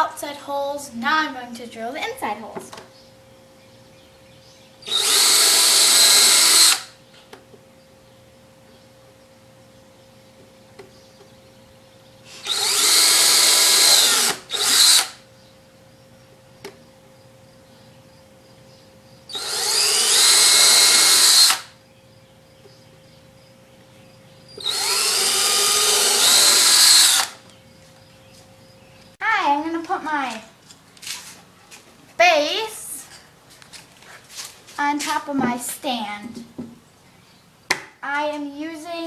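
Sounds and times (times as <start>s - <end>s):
cordless drill boring into wood: 4.9s - 6.9s, 12.4s - 15.2s, 19.3s - 21.7s, 24.6s - 27.4s.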